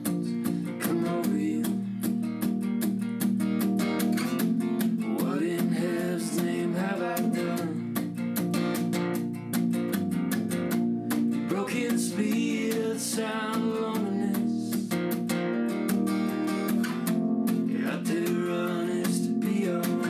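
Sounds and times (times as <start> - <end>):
acoustic guitar lead melody: 0.0 - 20.0
strummed acoustic guitar: 0.0 - 20.0.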